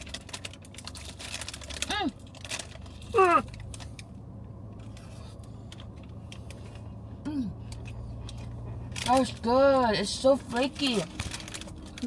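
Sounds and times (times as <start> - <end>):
person exclaiming mm: 3.1 - 3.5.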